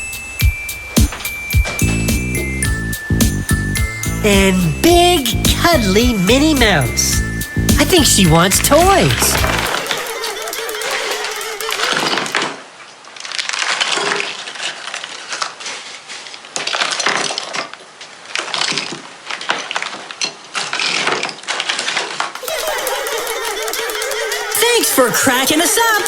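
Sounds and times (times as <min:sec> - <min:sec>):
plastic packaging crinkling: 0:08.6 - 0:12.4.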